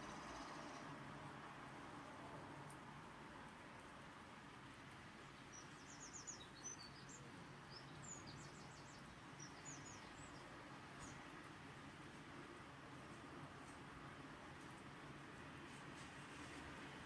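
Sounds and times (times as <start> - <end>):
small bird chirping: 0.0 - 0.9, 5.4 - 11.2
faint rain hiss: 0.0 - 17.0.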